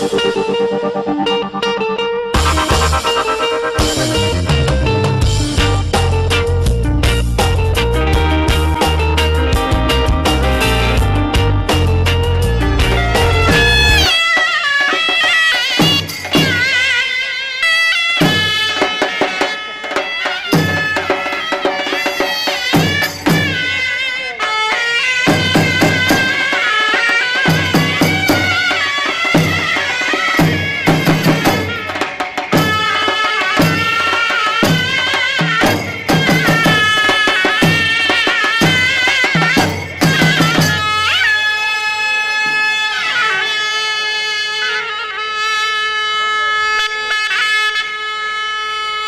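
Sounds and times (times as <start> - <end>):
double-reed shawm melody: 0.0 - 45.8
sharp drum strokes: 2.4 - 7.8, 18.2 - 41.6.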